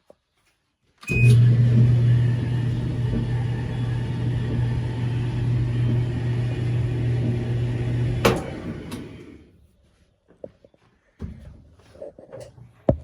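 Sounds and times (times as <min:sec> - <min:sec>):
dryer click: 0:01.0 - 0:09.4
clothes dryer humming and rumbling: 0:01.0 - 0:09.6.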